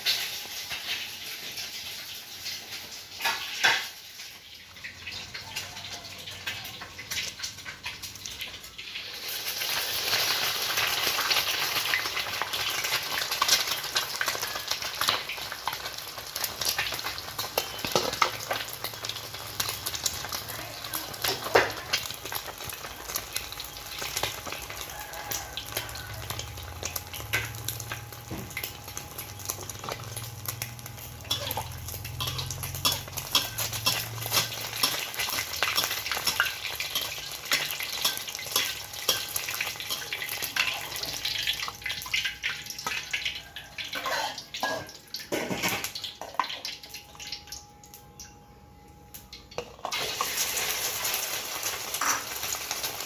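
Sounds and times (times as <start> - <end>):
food sizzling in hot oil: 0.0 - 47.8, 49.3 - 53.0
metal spatula scraping pan: 31.3 - 40.7.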